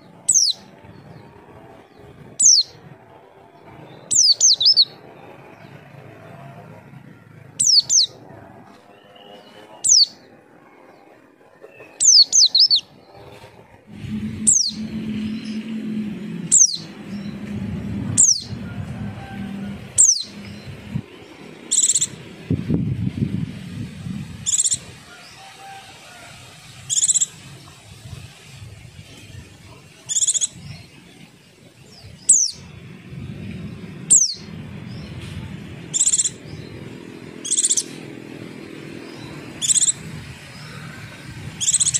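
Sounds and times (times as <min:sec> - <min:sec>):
bird high downslurred calls: 0:00.3 - 0:00.6, 0:02.4 - 0:02.8, 0:04.0 - 0:05.0, 0:07.6 - 0:08.2, 0:11.6 - 0:12.9, 0:13.9 - 0:22.2, 0:24.4 - 0:26.1, 0:26.7 - 0:27.4, 0:30.0 - 0:30.9, 0:35.9 - 0:38.1, 0:39.1 - 0:41.9
buzzy bird chirps: 0:00.3 - 0:00.6, 0:02.4 - 0:02.8, 0:04.0 - 0:05.0, 0:07.6 - 0:08.1, 0:09.8 - 0:10.2, 0:11.9 - 0:12.9, 0:14.0 - 0:18.6, 0:19.9 - 0:22.2, 0:24.2 - 0:25.2, 0:26.7 - 0:27.4, 0:30.0 - 0:30.9, 0:32.0 - 0:32.7, 0:34.1 - 0:34.5, 0:35.9 - 0:38.0, 0:39.1 - 0:41.9
low rumble: 0:13.6 - 0:25.1, 0:31.8 - 0:37.4.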